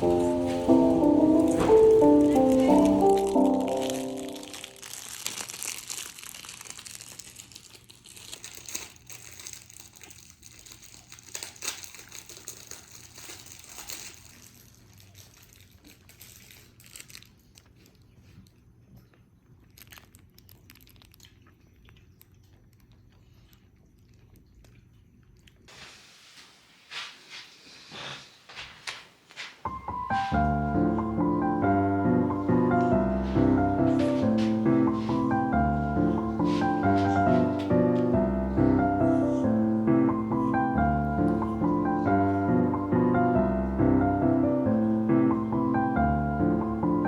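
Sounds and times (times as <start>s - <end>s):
plastic packaging crinkling: 0.0s - 18.2s, 19.7s - 21.3s, 29.6s - 43.1s.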